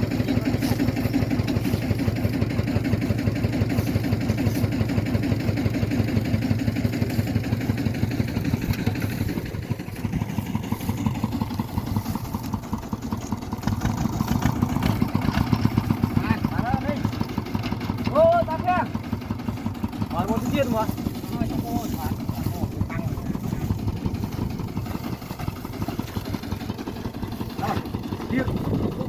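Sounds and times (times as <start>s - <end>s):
small engine running: 0.0s - 29.0s.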